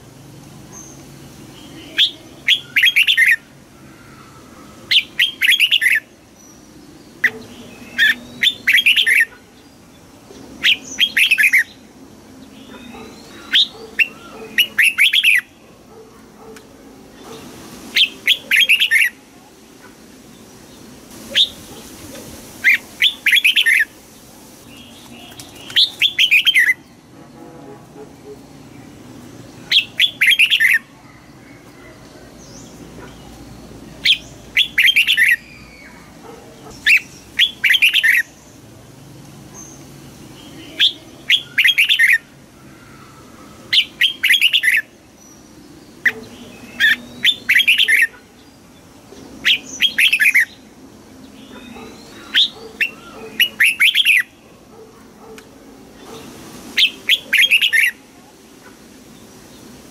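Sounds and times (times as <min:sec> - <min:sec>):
bulbul singing: 0:00.8 - 0:15.6, 0:18.0 - 0:19.2, 0:24.7 - 0:27.0, 0:29.6 - 0:38.6.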